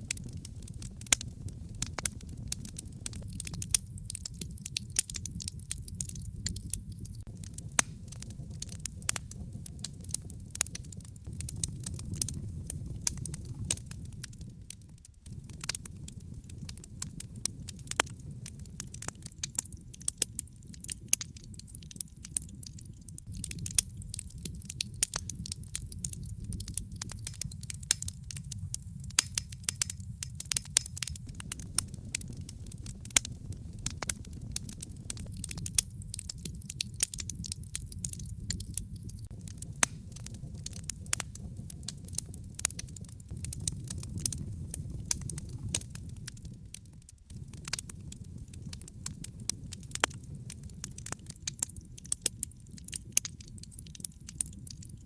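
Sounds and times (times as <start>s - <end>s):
fire crackling and popping: 0.0s - 55.0s
low rumble of flames: 0.0s - 55.0s.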